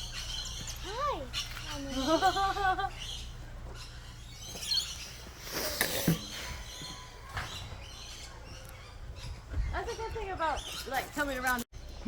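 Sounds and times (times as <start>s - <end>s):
low steady hum: 0.0s - 9.5s
bird chirps: 0.0s - 12.0s.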